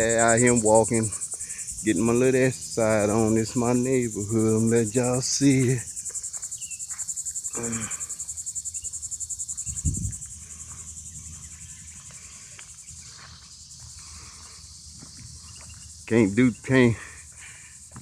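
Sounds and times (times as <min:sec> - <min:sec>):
insect chorus trilling: 0:00.0 - 0:18.0.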